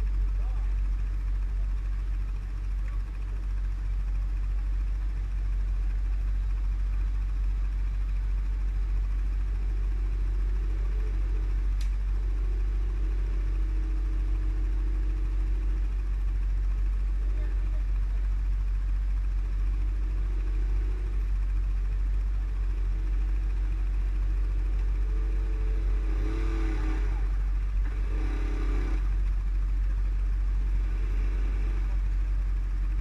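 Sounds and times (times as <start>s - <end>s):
atv engine running: 0.0s - 33.0s
heavy low rumble: 0.0s - 33.0s.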